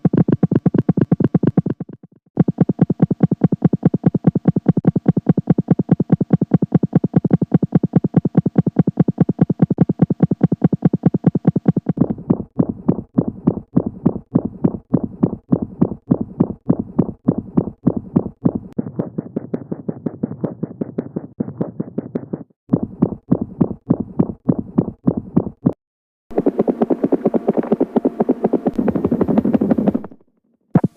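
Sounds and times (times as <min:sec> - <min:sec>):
heartbeat: 0:00.0 - 0:30.2
low rushing heart murmur: 0:26.3 - 0:30.2.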